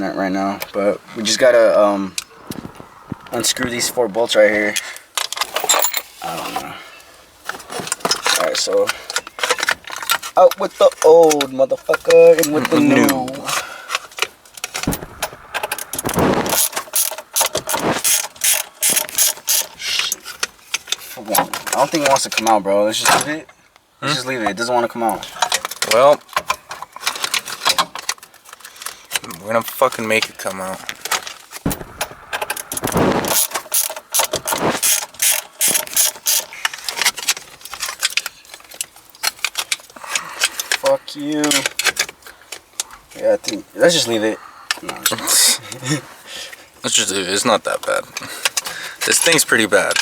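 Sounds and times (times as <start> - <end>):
scraping noise: 14.8 - 18.2, 31.7 - 35.1
ratchet wrench clicking: 16.6 - 19.8, 33.3 - 36.5.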